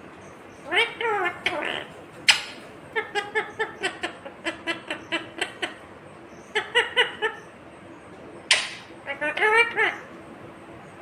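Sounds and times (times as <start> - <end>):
parrot laugh-like calls: 0.7 - 5.8, 6.5 - 7.6.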